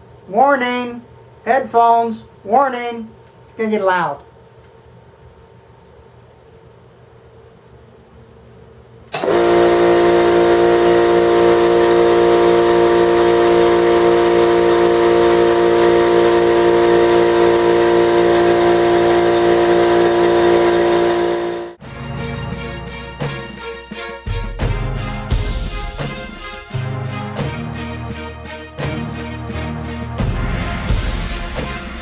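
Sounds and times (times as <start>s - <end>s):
air compressor running: 9.1s - 21.8s
music: 21.7s - 32.0s.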